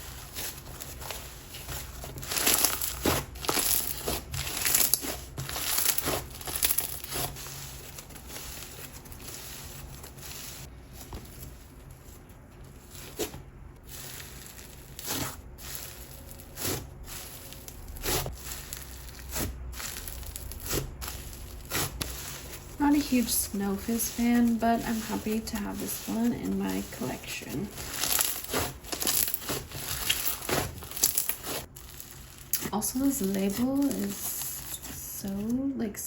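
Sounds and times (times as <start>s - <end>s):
slime crackling and fizzing: 0.0s - 11.7s, 12.8s - 35.3s.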